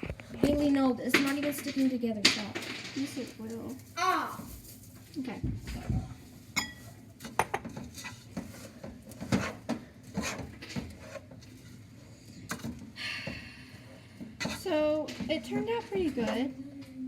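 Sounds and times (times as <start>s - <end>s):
spoon scraping and knocking pot: 6.6s - 11.8s, 14.2s - 16.4s.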